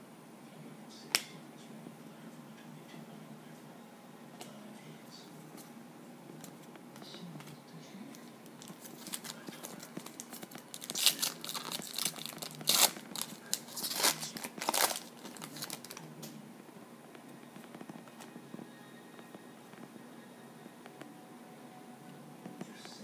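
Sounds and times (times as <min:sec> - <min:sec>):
card pack wrapper tearing: 0:08.6 - 0:16.0.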